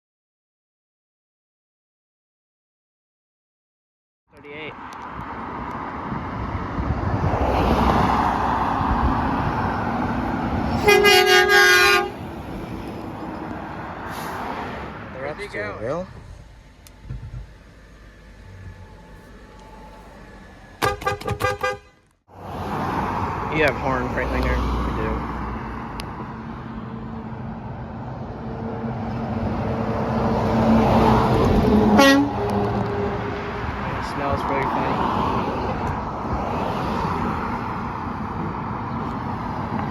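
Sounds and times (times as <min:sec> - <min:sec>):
road noise: 0:04.3 - 0:39.9
truck engine and tyre noise: 0:04.3 - 0:39.9
truck air horn blast: 0:10.7 - 0:12.2, 0:20.8 - 0:22.1, 0:31.6 - 0:33.7
truck engine running: 0:14.7 - 0:21.8.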